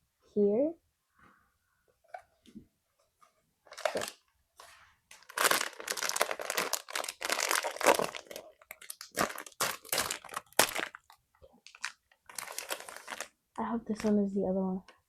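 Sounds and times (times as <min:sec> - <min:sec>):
plastic bag crinkling: 0:03.7 - 0:04.2, 0:05.1 - 0:13.4.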